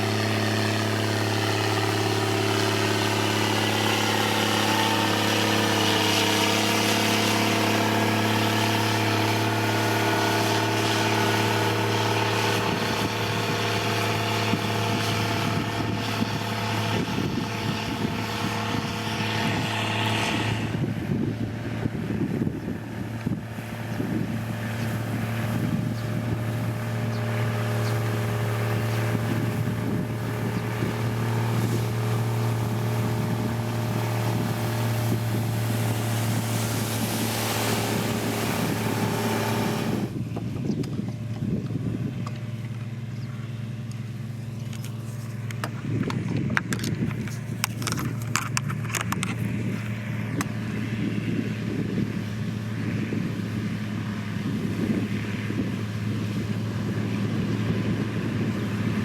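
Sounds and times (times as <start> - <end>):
diesel engine running: 0.0 - 59.0
rushing noise: 28.2 - 40.2.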